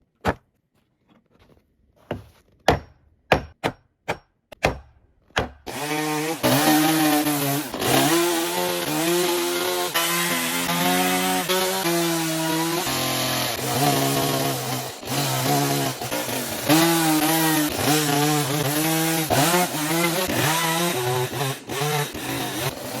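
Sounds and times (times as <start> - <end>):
chainsaw cutting wood: 4.7 - 23.0.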